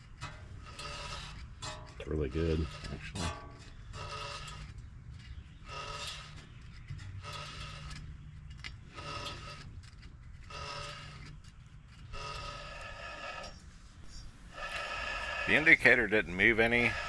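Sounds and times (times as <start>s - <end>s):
brake pads squeaking on rotor: 14.1s - 17.0s
low steady hum: 14.1s - 17.0s.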